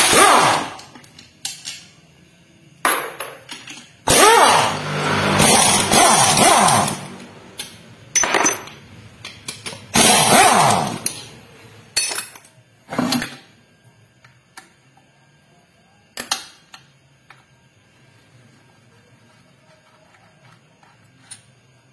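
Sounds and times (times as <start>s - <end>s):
loud bursts: 4.1s - 7.2s, 9.9s - 11.0s
metal tools clanking and scraping: 8.1s - 9.9s, 10.9s - 13.4s.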